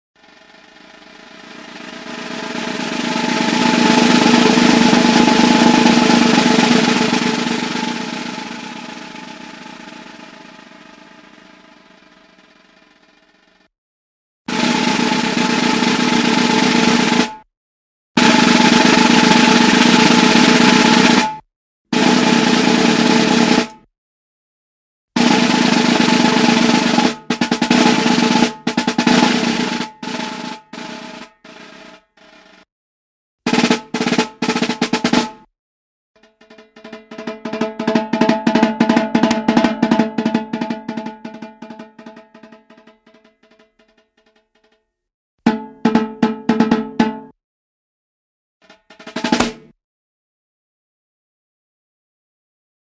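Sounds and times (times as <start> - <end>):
snare drum roll: 0.2 - 13.5, 14.5 - 17.4, 18.2 - 21.4, 22.0 - 23.9, 25.2 - 32.7, 33.5 - 35.5, 36.4 - 44.4, 45.5 - 47.4, 48.7 - 49.8.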